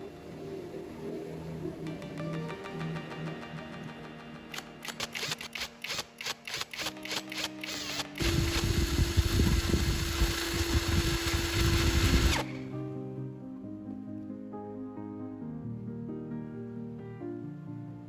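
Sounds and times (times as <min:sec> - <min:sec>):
background music: 0:00.0 - 0:09.4, 0:10.0 - 0:18.0
small electric power tool running: 0:03.4 - 0:12.6.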